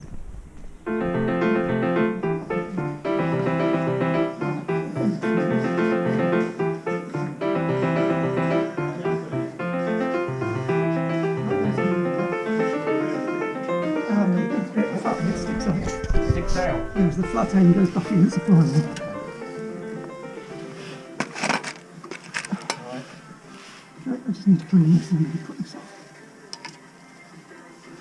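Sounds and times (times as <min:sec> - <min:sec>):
piano music: 0:00.8 - 0:22.0.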